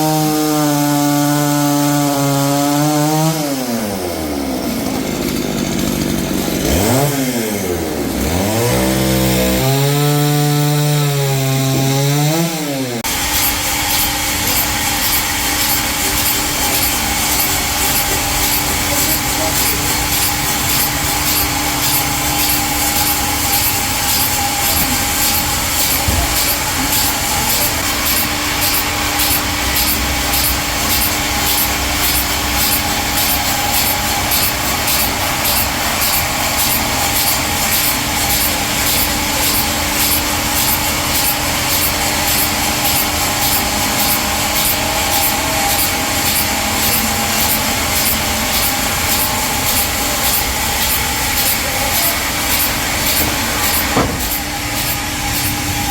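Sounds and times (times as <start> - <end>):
saw cutting through log: 0.0 - 55.9.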